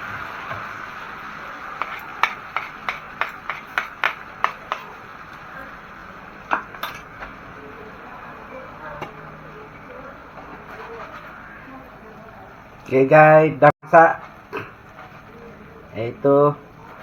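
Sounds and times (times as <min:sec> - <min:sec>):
frying hiss: 0:00.0 - 0:17.0
metal spatula scraping frying pan: 0:01.8 - 0:05.0.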